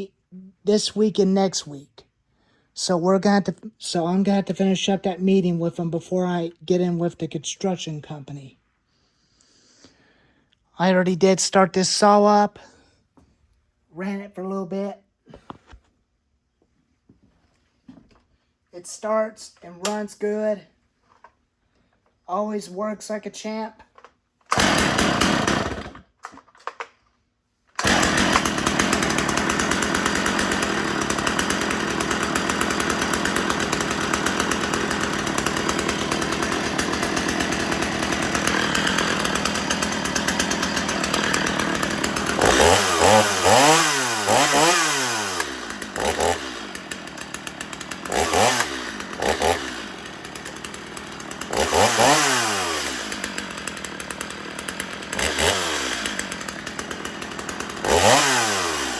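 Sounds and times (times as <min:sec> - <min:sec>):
chainsaw running and revving: 0:24.5 - 0:26.0, 0:27.8 - 0:58.9.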